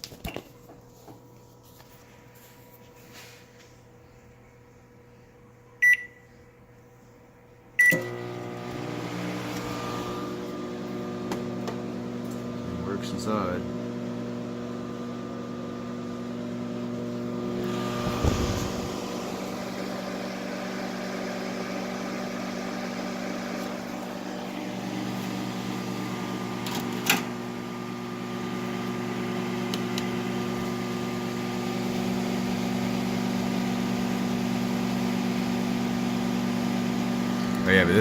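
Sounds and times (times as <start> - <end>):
microwave oven humming: 7.6 - 38.0.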